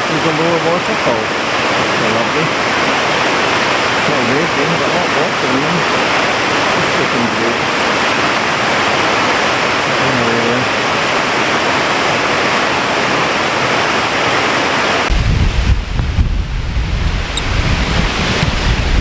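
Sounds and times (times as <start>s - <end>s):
small waterfall rushing: 0.0s - 19.0s
wind buffeting microphone: 14.9s - 19.0s.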